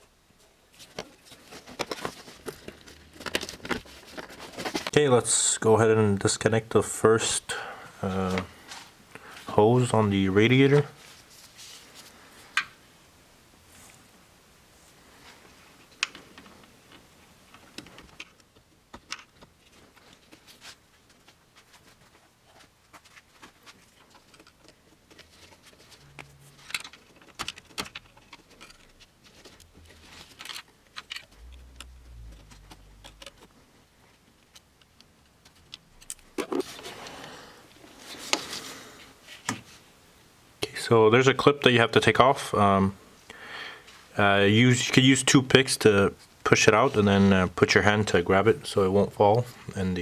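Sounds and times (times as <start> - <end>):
handling noise: 14.9 - 38.7
low rumble: 31.3 - 33.4.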